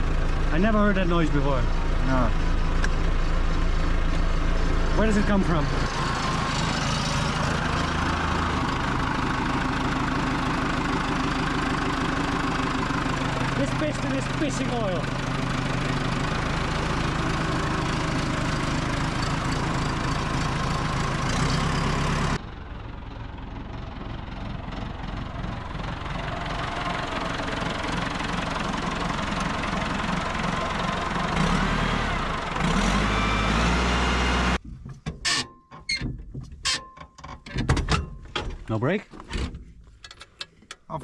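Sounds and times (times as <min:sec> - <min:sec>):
diesel engine running: 0:00.0 - 0:34.8
sharp clicks and knocks: 0:34.6 - 0:40.9.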